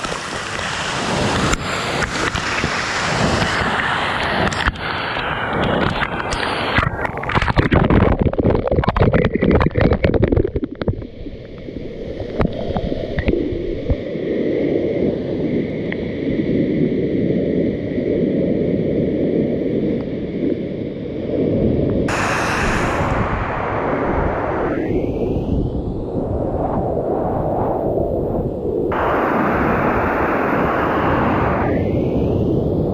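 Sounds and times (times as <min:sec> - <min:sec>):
rushing water: 0:00.0 - 0:16.1, 0:22.1 - 0:25.6
microphone crackling: 0:05.7 - 0:11.1, 0:22.1 - 0:26.0
short hiss: 0:22.1 - 0:25.4.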